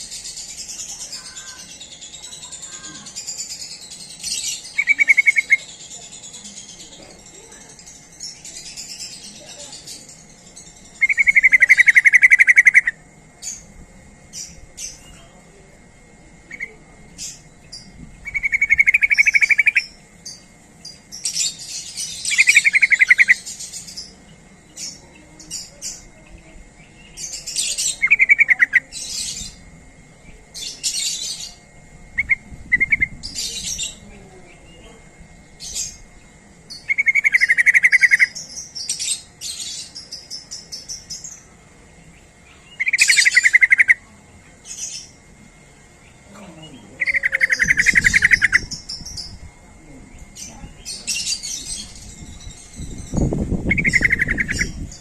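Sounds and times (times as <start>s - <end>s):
bird trilled calls: 0.0s - 13.7s, 16.5s - 29.6s, 30.5s - 55.0s
high bird chirps: 0.0s - 13.7s, 16.5s - 26.0s, 36.7s - 41.5s, 42.2s - 44.0s, 47.0s - 49.5s, 50.2s - 55.0s.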